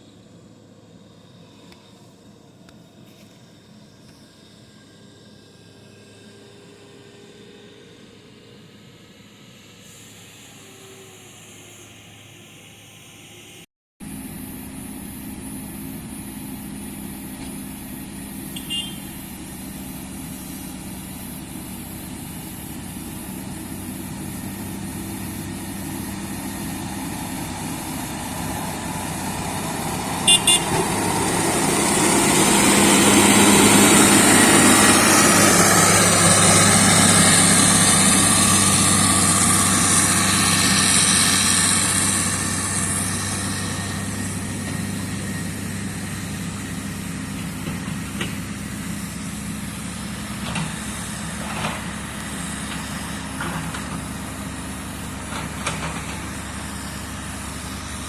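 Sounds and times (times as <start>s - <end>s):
diesel machinery engine running: 14.0s - 58.0s.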